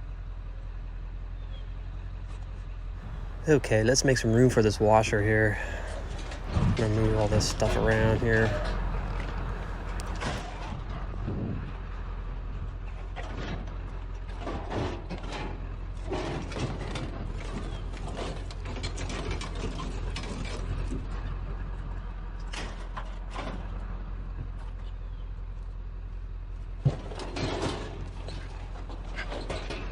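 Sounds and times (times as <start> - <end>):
steady low hum: 3.0 - 10.4
scrap metal clanking and scraping: 3.0 - 10.8, 26.9 - 29.9.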